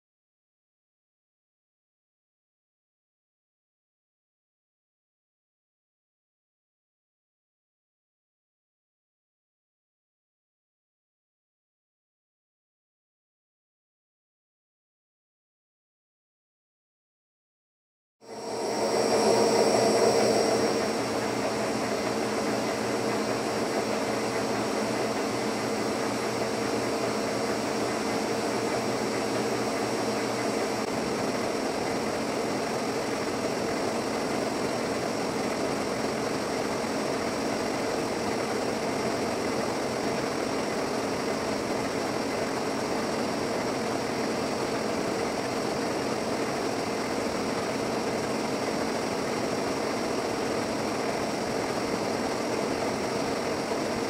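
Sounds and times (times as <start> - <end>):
machine hum with high whine: 18.2 - 54.0.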